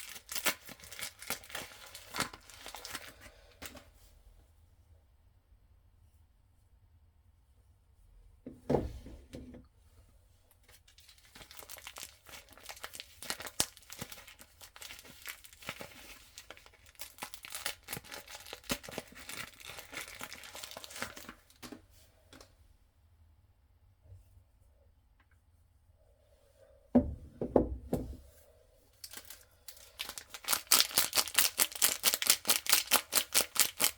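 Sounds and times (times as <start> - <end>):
packaging tearing and crinkling: 0.0 - 3.2, 10.9 - 21.6, 29.1 - 33.9
dull thump: 8.5 - 9.6, 26.9 - 28.3.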